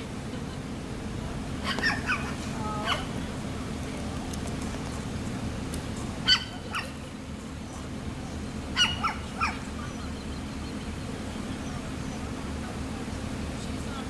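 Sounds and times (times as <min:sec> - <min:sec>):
low background rumble: 0:00.0 - 0:14.0
dog barking: 0:01.6 - 0:03.2, 0:06.2 - 0:07.0, 0:08.8 - 0:09.6.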